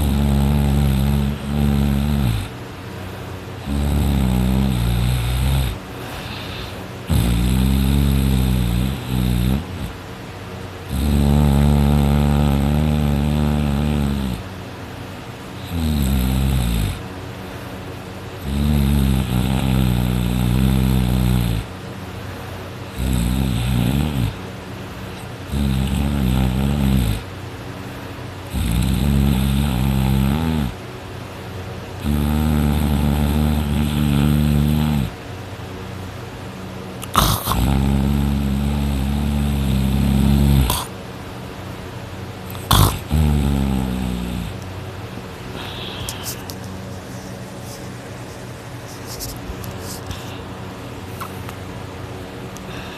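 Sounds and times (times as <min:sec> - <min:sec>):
person snoring loudly: 0:00.0 - 0:02.5, 0:03.6 - 0:10.0, 0:10.9 - 0:14.4, 0:15.6 - 0:17.0, 0:18.4 - 0:21.7, 0:22.9 - 0:24.4, 0:25.4 - 0:27.3, 0:28.5 - 0:30.8, 0:32.0 - 0:35.2, 0:37.0 - 0:40.9, 0:42.5 - 0:44.6, 0:45.5 - 0:46.5.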